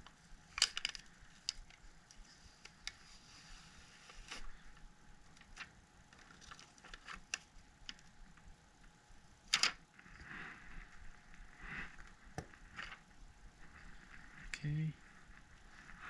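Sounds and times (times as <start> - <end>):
clicks and crinkling of adhesive sheet: 0.0 - 3.0, 4.1 - 8.5.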